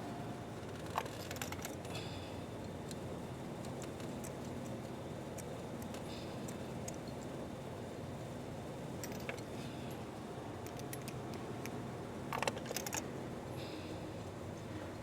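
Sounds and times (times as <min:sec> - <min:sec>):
steady background hum: 0:00.0 - 0:15.0
metal socket clicking and clinking: 0:09.0 - 0:09.5, 0:10.6 - 0:13.1.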